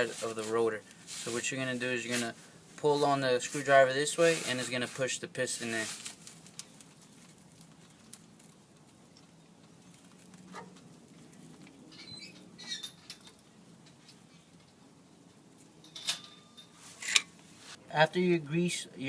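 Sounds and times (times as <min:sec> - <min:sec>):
screwdriver scraping metal: 0:16.9 - 0:17.3.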